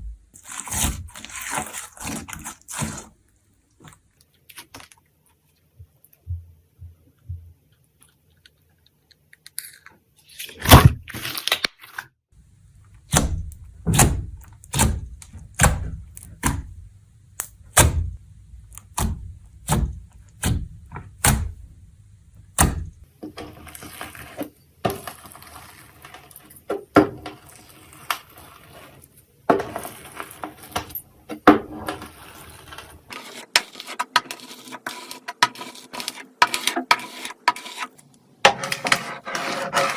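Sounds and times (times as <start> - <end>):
slime crackling and squishing: 0.4 - 5.0.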